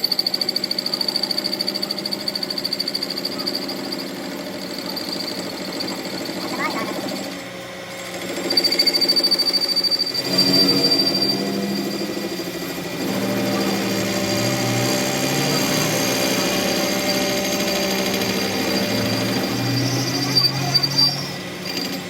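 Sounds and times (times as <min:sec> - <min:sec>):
workshop machine running: 0:00.0 - 0:22.0
thin high whine: 0:08.4 - 0:22.0.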